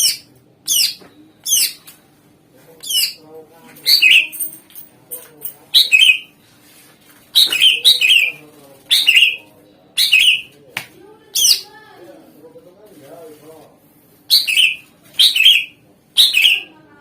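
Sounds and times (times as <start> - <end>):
bird calling: 3.8 - 4.5, 7.4 - 9.4, 10.0 - 10.5, 14.3 - 16.8.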